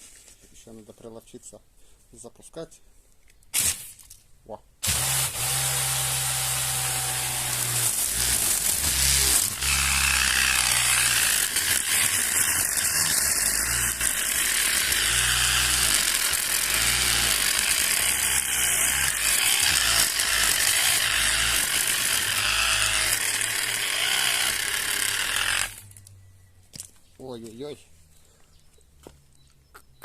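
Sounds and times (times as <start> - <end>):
grass trimmer motor cutting grass: 4.8 - 26.0.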